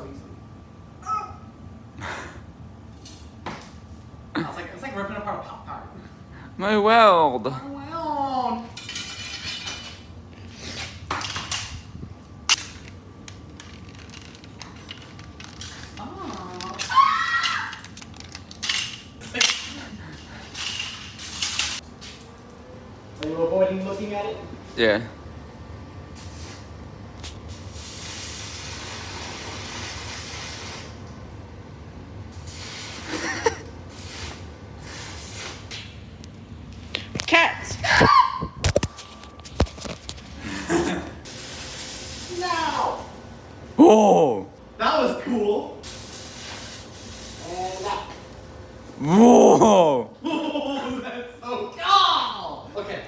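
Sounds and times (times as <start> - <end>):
metal pieces scraping: 8.8 - 10.1
welding arc hissing: 26.1 - 31.3, 32.3 - 36.1, 41.0 - 44.4, 45.8 - 49.1
short vocal sound: 43.8 - 44.5, 49.0 - 50.1.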